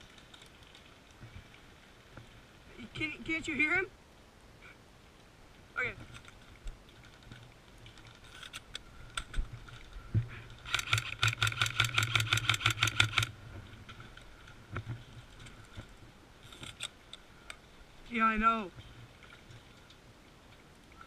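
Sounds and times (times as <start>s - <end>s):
gun motor whir: 10.6s - 13.3s.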